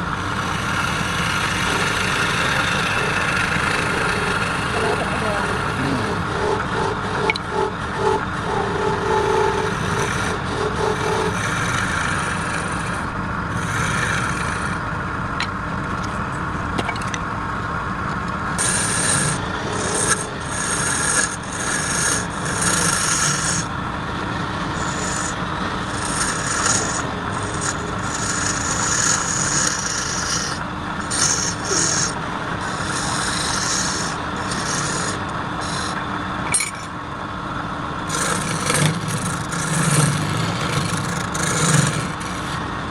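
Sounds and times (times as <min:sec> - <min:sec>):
wood lathe humming: 0:00.0 - 0:15.2, 0:18.6 - 0:36.2, 0:37.1 - 0:42.9
hissing rasping passes on wood: 0:00.4 - 0:13.0, 0:18.6 - 0:23.7, 0:24.7 - 0:36.0, 0:38.1 - 0:42.6.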